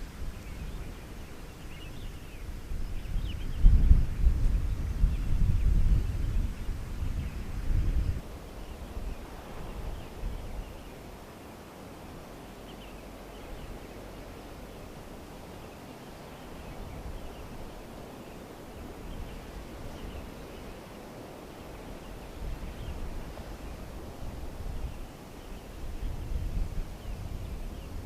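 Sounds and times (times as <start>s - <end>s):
strong wind buffeting microphone: 0.0s - 28.0s.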